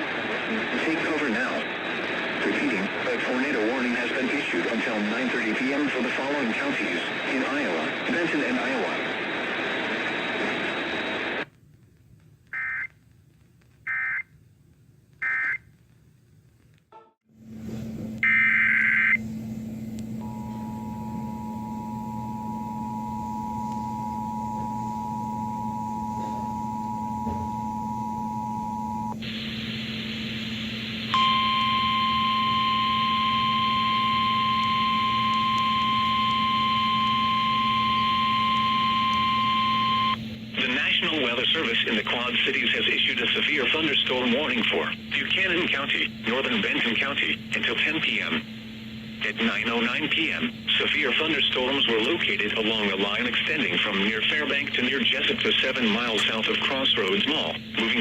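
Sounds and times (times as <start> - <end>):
low hum: 19.2 - 40.8
two-tone attention signal: 20.2 - 29.1, 31.2 - 40.2.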